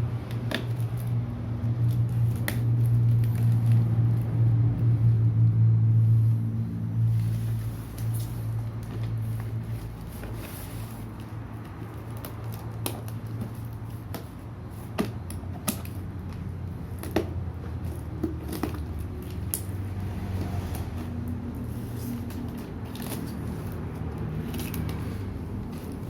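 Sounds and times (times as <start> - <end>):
package being handled and opened: 7.1 - 19.8, 21.5 - 26.0.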